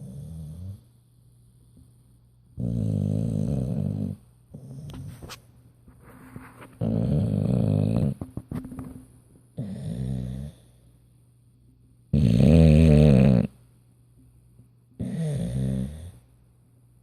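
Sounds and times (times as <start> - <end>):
dog snoring: 0.0 - 0.9, 2.6 - 5.2, 6.8 - 8.2, 9.6 - 10.7, 12.1 - 13.6, 15.0 - 16.2.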